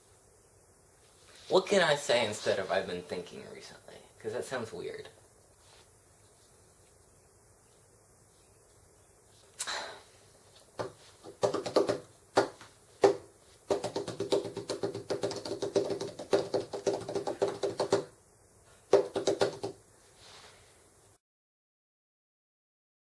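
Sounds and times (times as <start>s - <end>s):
rapid tapping on resonant surface: 10.8s - 18.1s, 18.9s - 19.8s.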